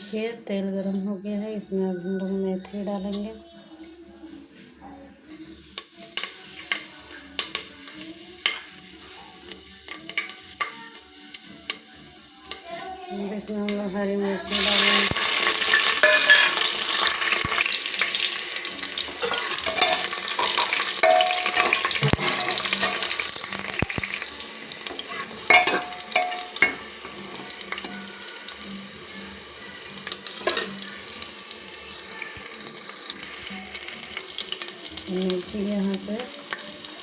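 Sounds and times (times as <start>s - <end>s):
chillies sizzling in hot oil: 4.3s - 37.0s
spoon knocking against metal: 25.5s - 26.8s.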